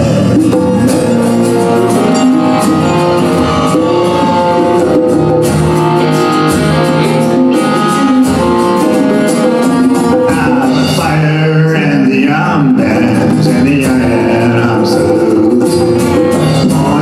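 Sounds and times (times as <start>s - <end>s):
held-note melody: 0.0s - 11.7s
strummed acoustic guitars: 0.0s - 17.0s.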